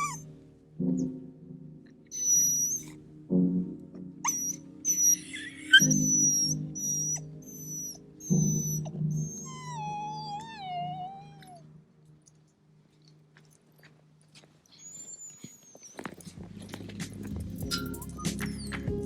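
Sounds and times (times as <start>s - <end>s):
dogs whining: 0.0s - 0.4s, 2.1s - 3.0s, 4.2s - 11.7s, 14.7s - 19.0s.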